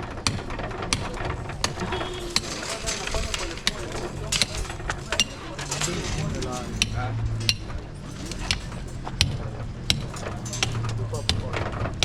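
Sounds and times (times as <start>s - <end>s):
tools striking stone: 6.6s - 12.0s.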